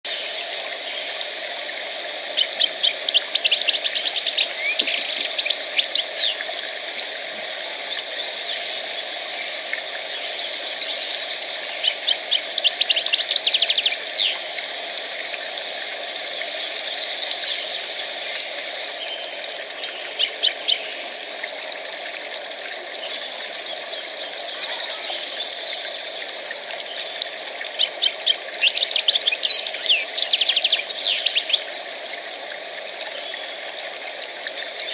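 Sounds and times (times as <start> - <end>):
songbird trilling: 2.4 - 6.4, 11.8 - 14.4, 20.2 - 21.0, 27.8 - 31.7.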